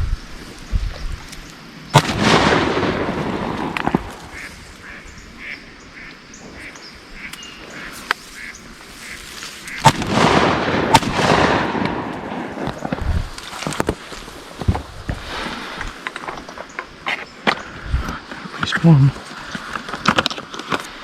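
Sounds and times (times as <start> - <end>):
sharp crack: 1.3 - 5.0, 9.0 - 18.8
ducks quacking: 3.7 - 10.1
sharp loud bang: 9.8 - 12.7.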